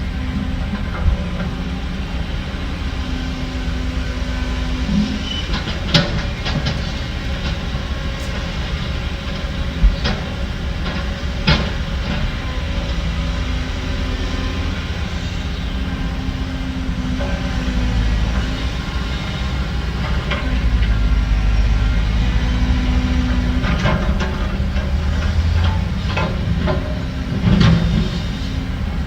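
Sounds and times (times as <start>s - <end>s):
diesel machinery rumbling: 0.0s - 29.0s.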